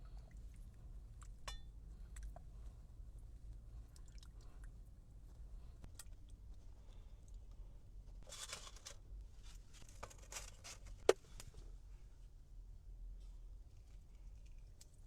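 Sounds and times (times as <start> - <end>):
food wrapper rustling and tearing: 8.2 - 11.0.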